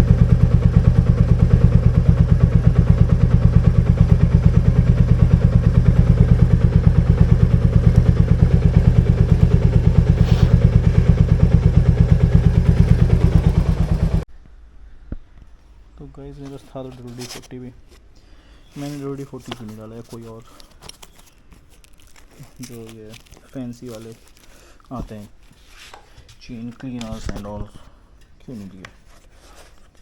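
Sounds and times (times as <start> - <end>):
motorcycle engine running: 0.0 - 14.2.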